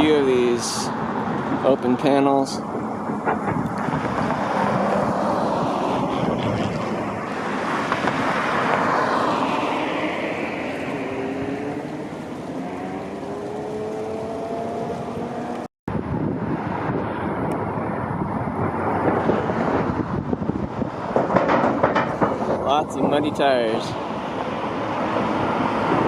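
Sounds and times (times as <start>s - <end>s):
vehicle rushing past: 2.5s - 21.7s, 22.4s - 26.0s
vehicle engine accelerating: 3.5s - 15.7s.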